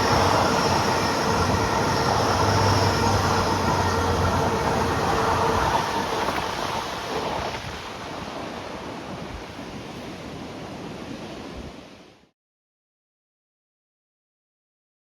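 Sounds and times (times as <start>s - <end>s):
wind buffeting microphone: 0.0s - 12.0s
passing train: 0.0s - 12.1s
rough sea waves surging: 0.0s - 12.3s.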